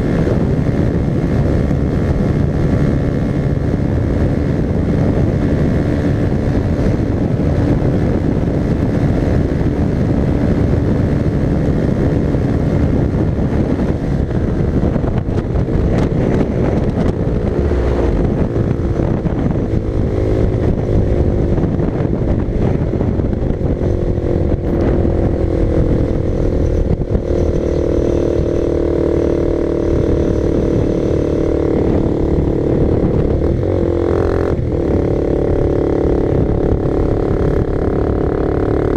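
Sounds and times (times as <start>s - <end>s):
motorcycle engine running: 0.0s - 38.9s
wind noise: 0.0s - 38.9s.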